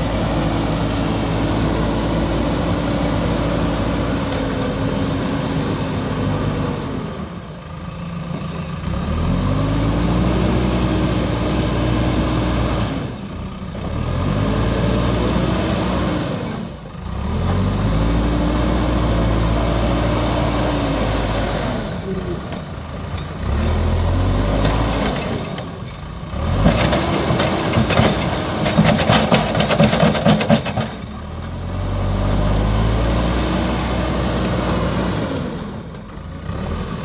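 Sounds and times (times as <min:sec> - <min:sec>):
diesel engine revving: 0:00.0 - 0:37.0.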